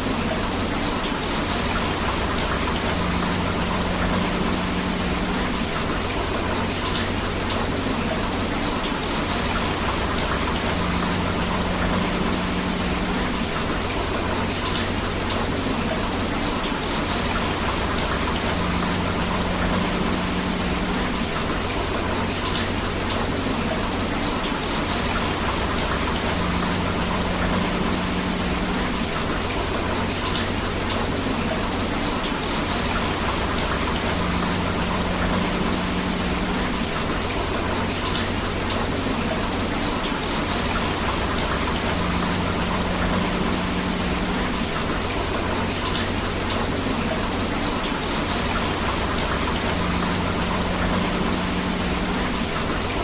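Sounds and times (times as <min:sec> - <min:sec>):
steady rain: 0:00.0 - 0:53.0.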